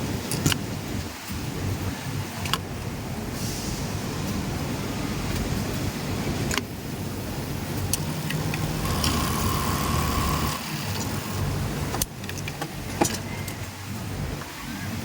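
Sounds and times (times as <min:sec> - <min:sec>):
sharp clicks: 0:07.8 - 0:12.7
sewing machine motor hum: 0:08.0 - 0:11.9.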